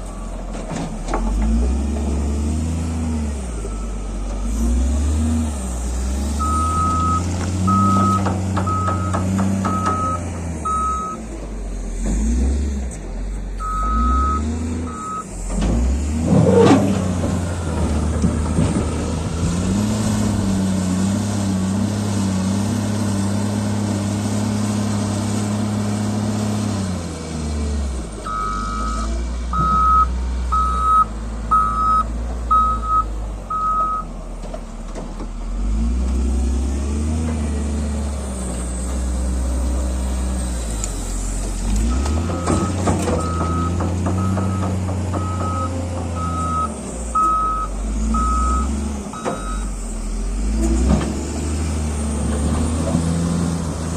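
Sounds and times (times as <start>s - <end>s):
diesel construction machine engine: 0.0s - 53.9s
reversing alarm beeping: 6.4s - 11.2s, 13.6s - 15.3s, 28.3s - 34.1s, 41.9s - 49.7s.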